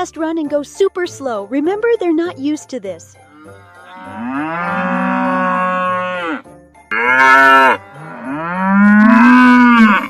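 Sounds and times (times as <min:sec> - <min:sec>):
cow mooing: 0:03.4 - 0:10.0.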